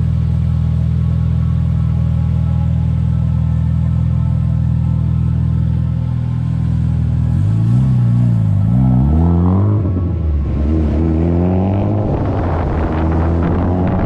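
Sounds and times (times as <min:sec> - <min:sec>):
car engine revving: 0:03.6 - 0:14.0.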